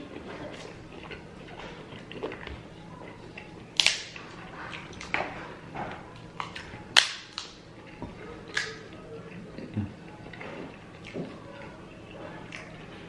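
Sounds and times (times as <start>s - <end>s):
seafood shells cracking: 3.6s - 5.2s, 6.4s - 7.6s, 8.5s - 8.8s.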